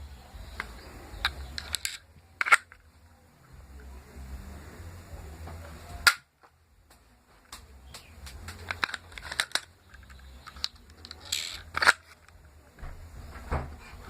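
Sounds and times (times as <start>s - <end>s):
toy pistol plastic clicks: 0.6s - 2.8s, 6.0s - 6.3s, 8.6s - 12.4s
loud plastic snap: 6.0s - 6.3s.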